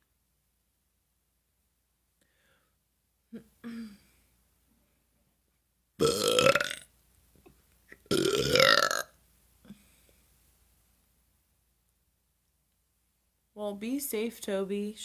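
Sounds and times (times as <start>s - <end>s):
woman burping: 3.3s - 4.0s, 6.0s - 6.8s, 8.1s - 9.1s.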